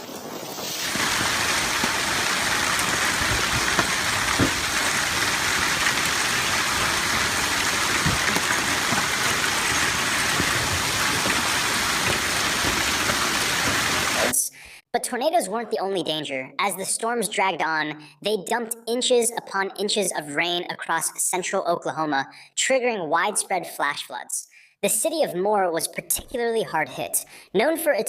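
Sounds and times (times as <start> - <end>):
heavy rain hissing: 0.0 - 14.4.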